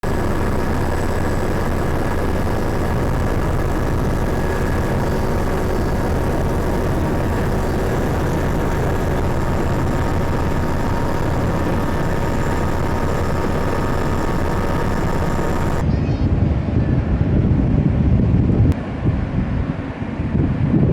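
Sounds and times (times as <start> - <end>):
high whining tones: 0.0 - 15.8
engine drone: 0.0 - 15.9
rough low rumble: 0.0 - 15.9.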